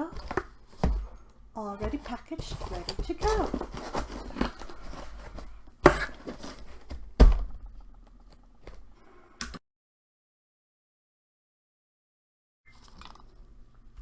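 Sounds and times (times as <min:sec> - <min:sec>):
objects knocking on hard surface: 0:00.0 - 0:08.1
rustling: 0:00.0 - 0:09.0.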